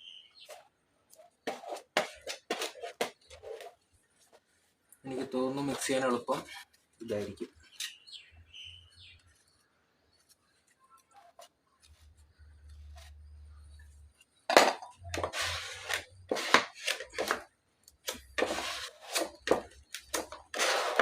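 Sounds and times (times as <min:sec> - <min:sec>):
putty spreader scraping: 0:01.4 - 0:03.8, 0:15.0 - 0:17.5, 0:18.1 - 0:21.0.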